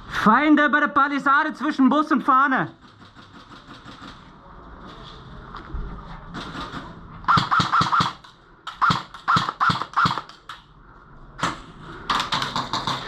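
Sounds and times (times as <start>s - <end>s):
airsoft gun shots: 6.4s - 8.2s, 8.8s - 10.3s.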